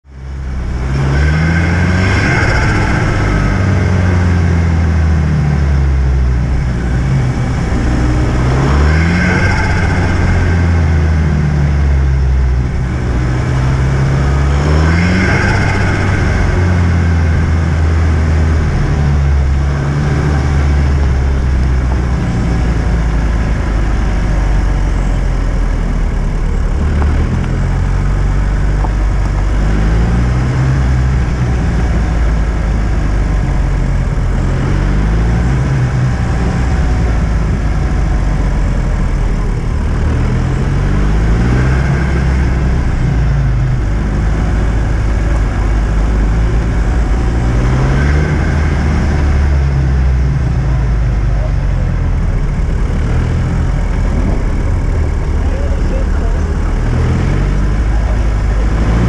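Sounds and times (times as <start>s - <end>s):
car engine revving: 0.0s - 59.0s.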